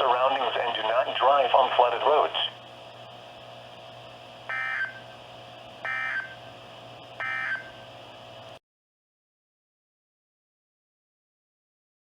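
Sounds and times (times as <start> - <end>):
faint steady hum: 0.0 - 8.6
digital data tone bursts: 4.5 - 5.2, 5.8 - 6.4, 7.2 - 7.8.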